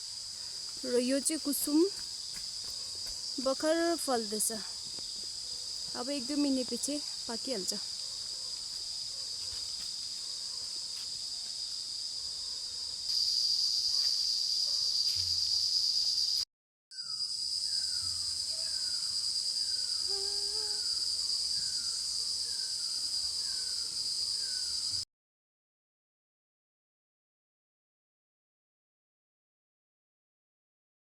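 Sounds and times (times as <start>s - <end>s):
high-pitched insect chorus: 0.0s - 16.4s, 17.0s - 25.0s.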